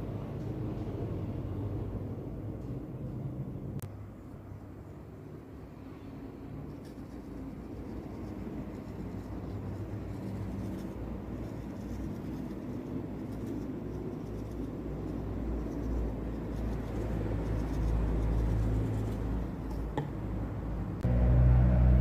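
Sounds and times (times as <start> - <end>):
low rumble: 20.6 - 22.0.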